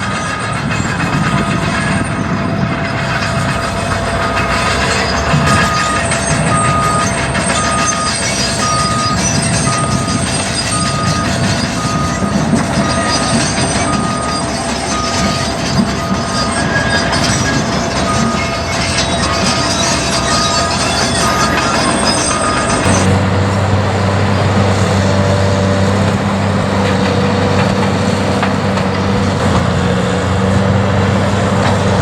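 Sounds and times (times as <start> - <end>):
engine running: 0.0 - 32.0
backup alarm beeping: 2.9 - 23.1.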